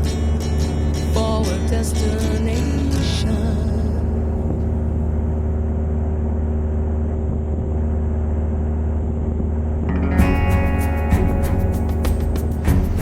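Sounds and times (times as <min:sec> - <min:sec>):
music: 0:00.0 - 0:04.4, 0:09.9 - 0:13.0
light aircraft engine drone: 0:00.0 - 0:09.9.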